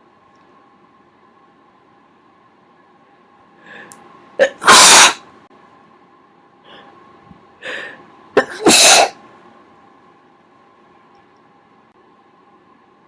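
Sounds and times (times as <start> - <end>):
person sneezing: 4.4 - 5.2, 8.4 - 9.2.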